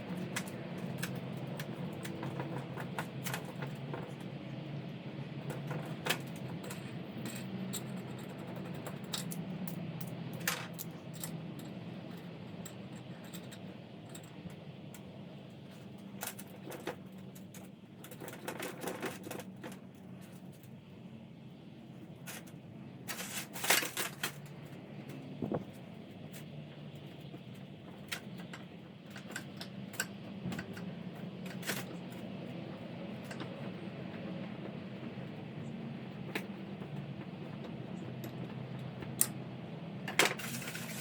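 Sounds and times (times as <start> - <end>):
small metal parts clinking: 23.1 - 24.4, 40.1 - 41.0.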